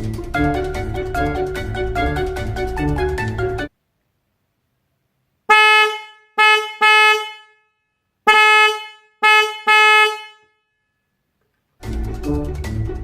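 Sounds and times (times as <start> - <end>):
car horn short blasts: 5.5 - 10.8.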